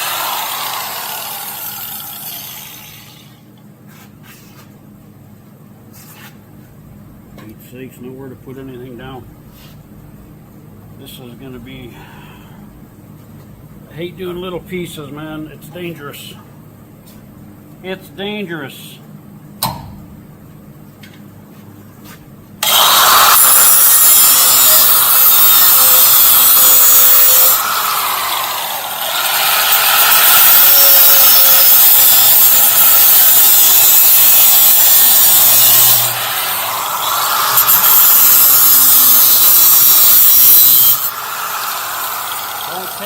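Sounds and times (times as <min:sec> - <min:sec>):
angle grinder cutting metal: 0:00.0 - 0:03.4, 0:22.6 - 0:43.0.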